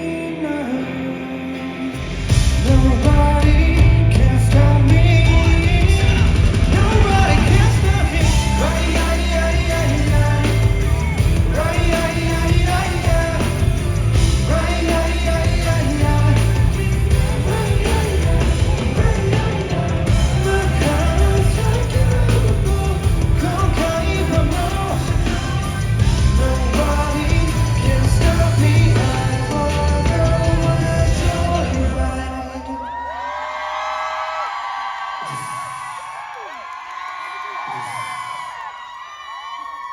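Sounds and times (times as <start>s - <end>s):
rock-pop backing track: 0.0s - 32.5s
man singing pop: 0.0s - 33.1s.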